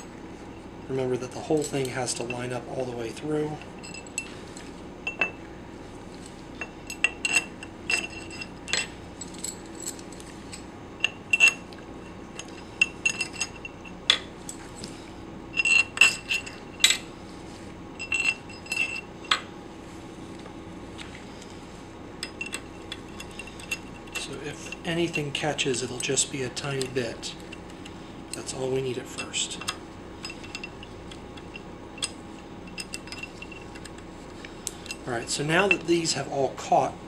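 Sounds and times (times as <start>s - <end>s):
small metal parts clinking: 6.2s - 11.7s, 12.4s - 15.0s, 22.2s - 25.2s, 29.2s - 34.0s.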